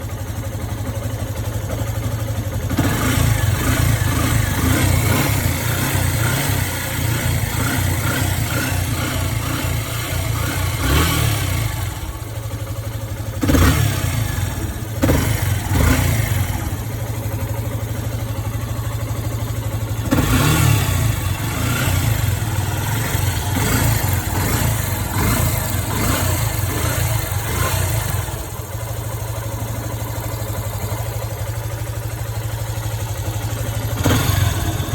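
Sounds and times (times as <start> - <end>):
motorcycle engine revving: 0.0 - 34.9.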